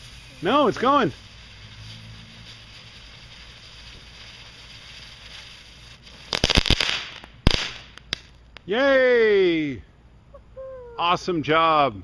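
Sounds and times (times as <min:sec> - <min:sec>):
firework cracks and pops: 0:00.0 - 0:08.7
firework hiss: 0:00.0 - 0:08.7.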